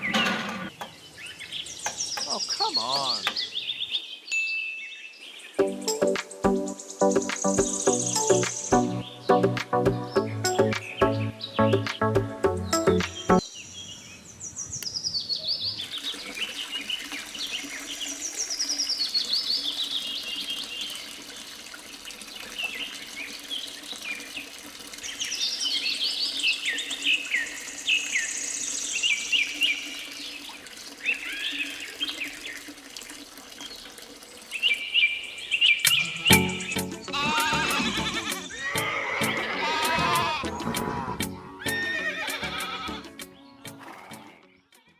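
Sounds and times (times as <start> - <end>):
birds chirping and singing: 0.0 - 17.1, 34.6 - 44.8.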